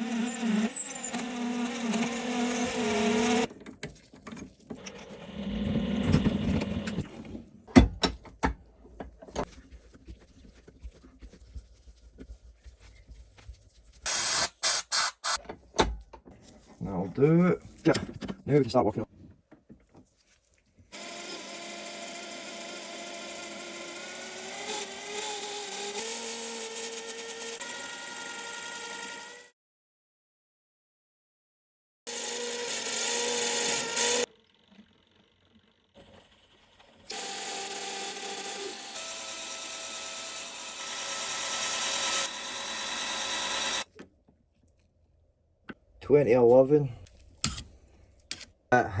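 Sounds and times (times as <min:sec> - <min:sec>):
metal lathe whining: 0:00.0 - 0:03.5, 0:37.1 - 0:43.8.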